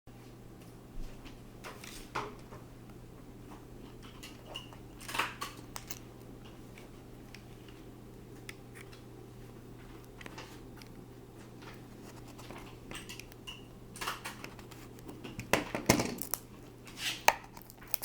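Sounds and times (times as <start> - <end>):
steady low hum: 0.1 - 18.0
packaging clicks and rustles: 4.0 - 18.0
packaging crinkle: 9.8 - 18.0.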